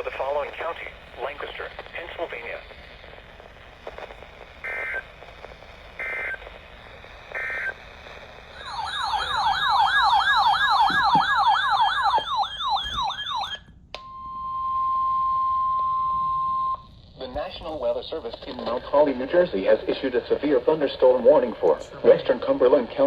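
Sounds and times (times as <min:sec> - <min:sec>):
warbling alarm tone: 0:08.5 - 0:13.6
steady single-pitch alert tone: 0:08.6 - 0:16.7.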